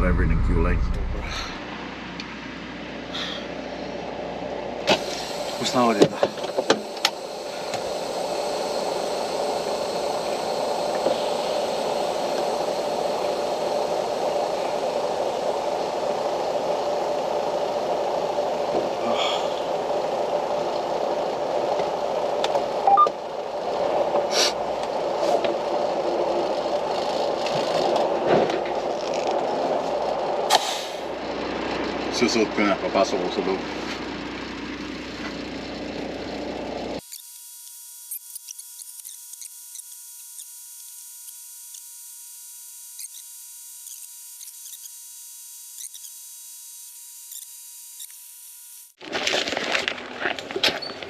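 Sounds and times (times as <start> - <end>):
truck engine running: 0.0 - 37.0.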